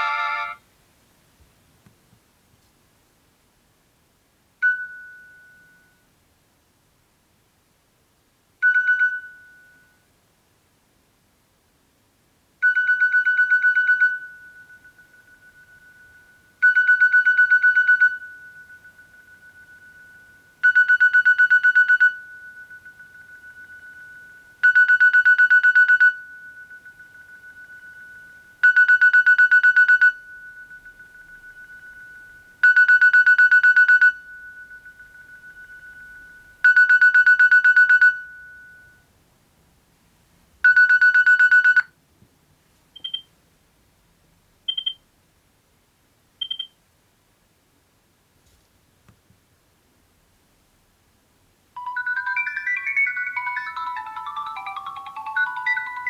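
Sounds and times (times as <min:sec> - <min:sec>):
pulsing electronic phone ringtone: 0:00.0 - 0:00.6, 0:12.6 - 0:39.0, 0:40.7 - 0:41.9, 0:51.8 - 0:56.0.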